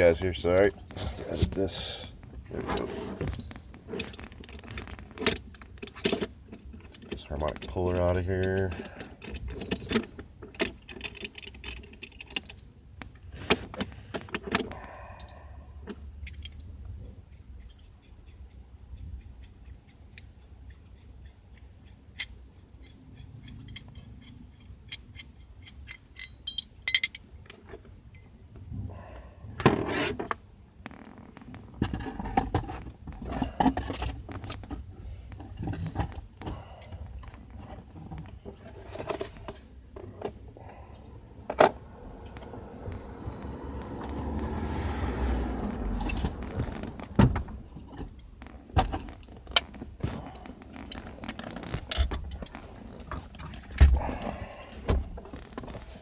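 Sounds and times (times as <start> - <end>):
metal tools clinking and rattling: 3.3 - 12.8, 16.2 - 18.1, 21.8 - 27.3, 45.9 - 47.0.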